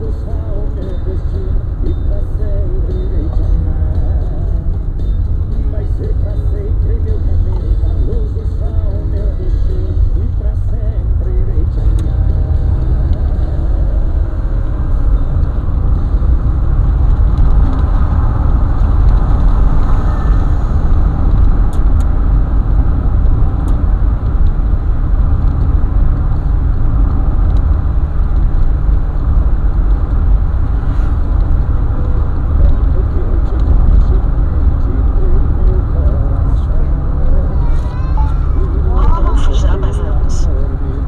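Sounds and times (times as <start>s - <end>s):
car road and engine rumble: 0.0s - 41.0s.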